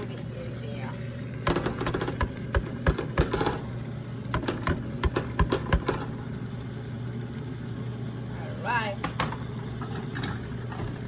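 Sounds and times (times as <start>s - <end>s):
sharp clicks and knocks: 1.4s - 3.6s, 4.3s - 6.1s.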